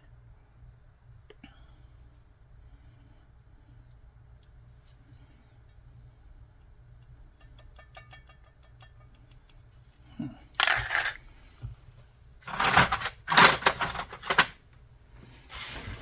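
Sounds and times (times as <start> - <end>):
metal parts clicking and rattling: 10.6 - 11.2, 12.4 - 14.6.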